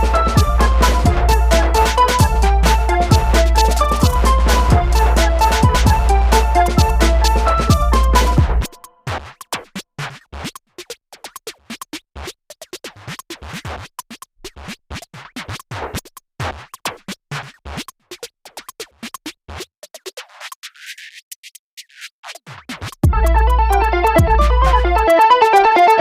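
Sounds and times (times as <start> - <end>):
stuttering electronic music: 0.0 - 8.9, 23.0 - 26.0.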